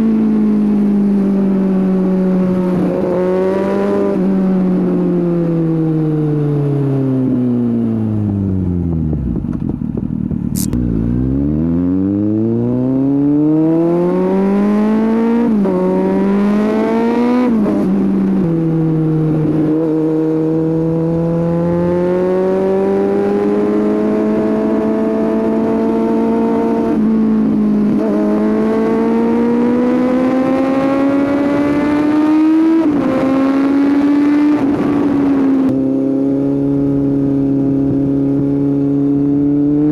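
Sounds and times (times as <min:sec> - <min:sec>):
motorcycle engine revving: 0:06.6 - 0:39.9
sharp click: 0:10.5 - 0:10.8.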